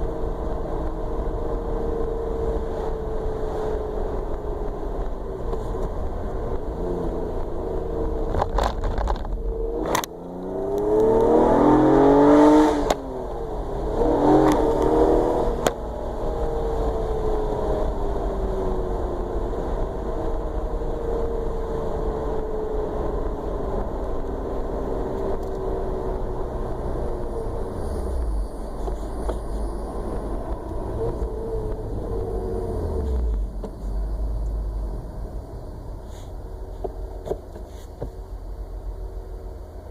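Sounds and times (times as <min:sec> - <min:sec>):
vehicle engine revving: 0:00.0 - 0:36.9.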